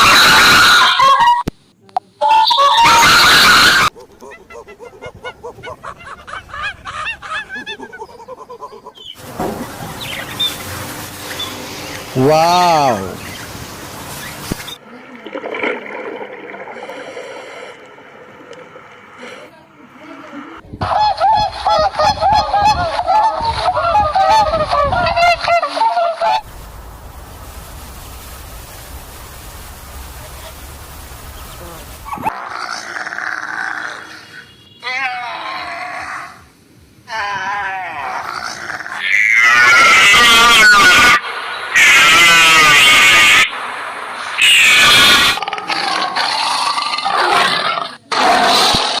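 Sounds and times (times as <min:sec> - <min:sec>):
flock of fowl calling: 0:02.2 - 0:09.2, 0:39.0 - 0:43.5
steady outdoor hiss: 0:02.9 - 0:15.0, 0:26.3 - 0:48.5
flock of birds calling: 0:39.1 - 0:43.5.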